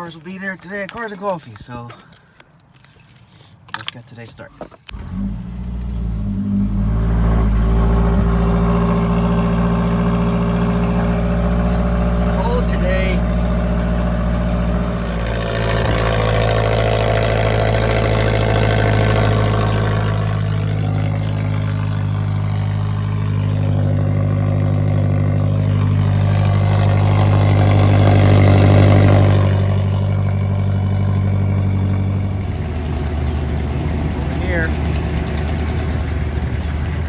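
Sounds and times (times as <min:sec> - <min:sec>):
car engine running: 0:04.9 - 0:37.0.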